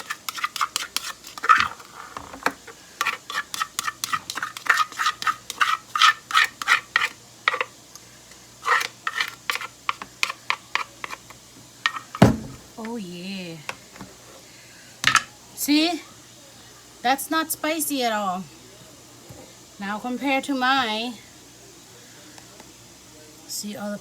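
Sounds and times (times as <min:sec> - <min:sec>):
utensils clicking and scraping dish: 0:00.0 - 0:07.7, 0:08.6 - 0:12.2.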